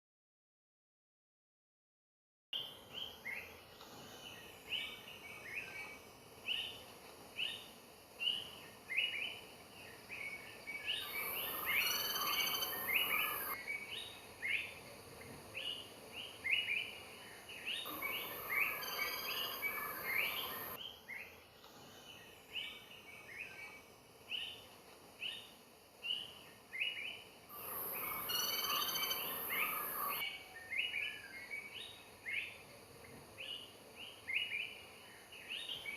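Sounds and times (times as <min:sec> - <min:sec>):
woodpecker calling: 0:11.0 - 0:13.6, 0:17.9 - 0:20.8, 0:27.5 - 0:30.2.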